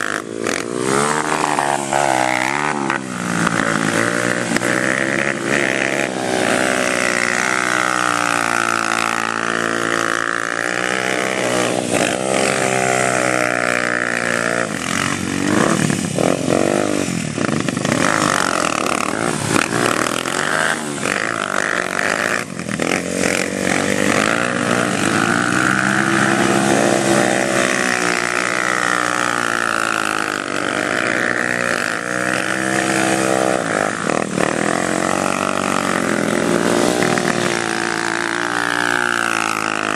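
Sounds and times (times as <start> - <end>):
quad bike engine revving: 0.0 - 39.9.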